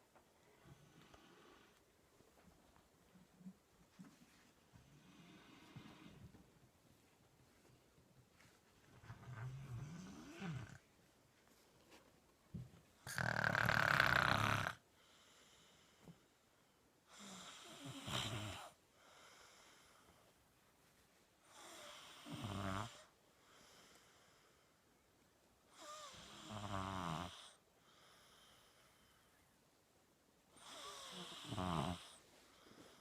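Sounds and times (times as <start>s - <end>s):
person snoring: 13.0s - 14.8s, 30.6s - 32.2s
faint breathing: 14.9s - 16.9s, 18.9s - 20.4s, 23.3s - 24.9s, 27.8s - 29.6s, 32.1s - 33.0s.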